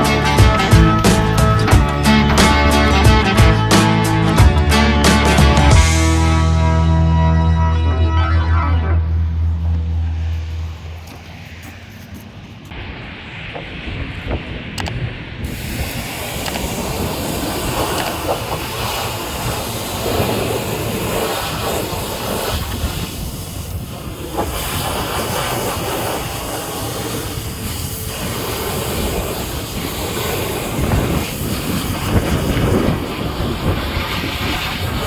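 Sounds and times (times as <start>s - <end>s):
pressure washer spray hissing: 0.0s - 4.0s, 15.4s - 35.0s.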